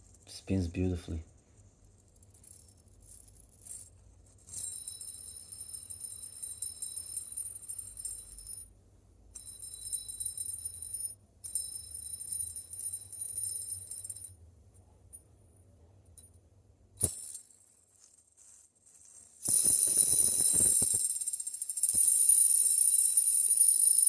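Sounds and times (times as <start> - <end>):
fidget spinner metallic ringing: 2.0 - 8.7, 9.4 - 14.4, 19.4 - 24.0.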